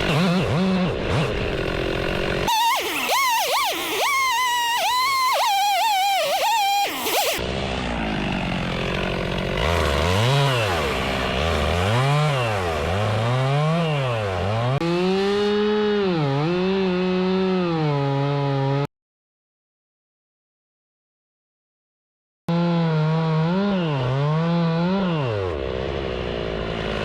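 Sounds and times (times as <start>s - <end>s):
chainsaw engine revving: 0.0s - 18.9s, 22.5s - 27.0s.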